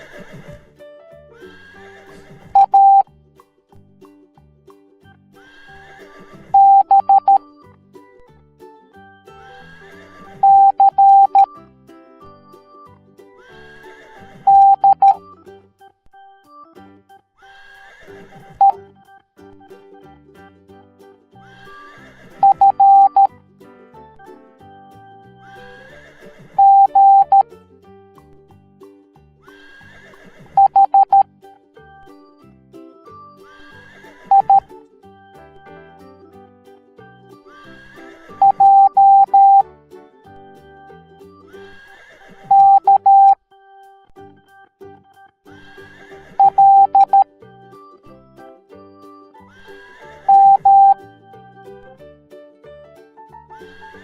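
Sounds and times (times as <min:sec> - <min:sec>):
horse whinny: 0:00.0 - 0:00.6, 0:01.5 - 0:02.7, 0:05.4 - 0:06.7, 0:09.5 - 0:10.7, 0:13.6 - 0:14.6, 0:17.4 - 0:18.6, 0:21.5 - 0:23.0, 0:25.6 - 0:27.1, 0:29.5 - 0:31.0, 0:33.5 - 0:34.6, 0:37.7 - 0:39.0, 0:41.6 - 0:42.8, 0:45.6 - 0:46.9, 0:49.6 - 0:50.6
background music: 0:00.0 - 0:41.9, 0:42.5 - 0:54.0
morse code beeps: 0:02.5 - 0:03.1, 0:06.6 - 0:07.5, 0:10.4 - 0:11.5, 0:14.4 - 0:15.3, 0:18.6 - 0:18.8, 0:22.4 - 0:23.3, 0:26.6 - 0:27.4, 0:30.6 - 0:31.3, 0:34.3 - 0:34.7, 0:38.4 - 0:39.6, 0:42.5 - 0:43.4, 0:46.4 - 0:47.3, 0:50.2 - 0:51.0.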